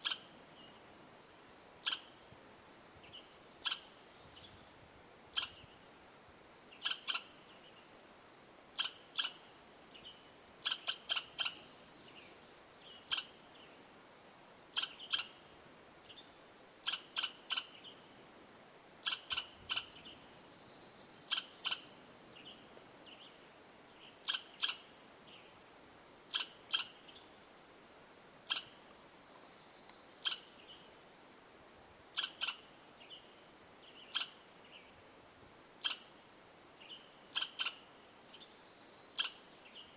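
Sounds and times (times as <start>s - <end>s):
small animal chip calls: 0.0s - 0.3s, 1.8s - 2.2s, 3.6s - 4.0s, 5.3s - 5.7s, 6.8s - 7.4s, 8.8s - 9.5s, 10.6s - 11.8s, 13.0s - 13.5s, 14.7s - 15.5s, 16.8s - 18.0s, 19.0s - 20.2s, 21.2s - 22.0s, 24.2s - 24.9s, 26.3s - 27.2s, 28.4s - 28.8s, 30.2s - 30.8s, 32.1s - 32.7s, 34.0s - 34.4s, 35.8s - 36.1s, 37.3s - 37.9s, 39.1s - 39.5s.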